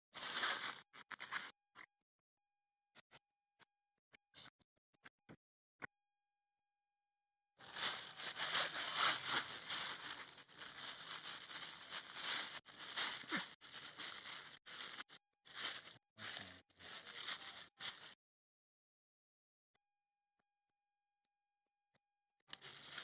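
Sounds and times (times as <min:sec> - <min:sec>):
plastic bag crinkling: 0:00.2 - 0:01.4, 0:07.6 - 0:16.0, 0:22.5 - 0:23.0.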